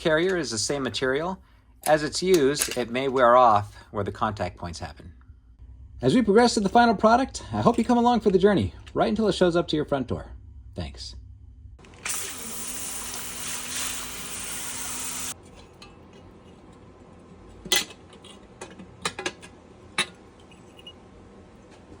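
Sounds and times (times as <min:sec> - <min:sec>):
steady hiss with low hum: 0:00.0 - 0:22.0.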